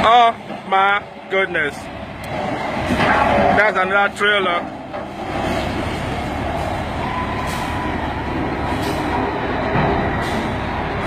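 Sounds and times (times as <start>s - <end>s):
heavy traffic rumble: 0.0s - 11.0s
high brake squeal: 7.0s - 9.3s.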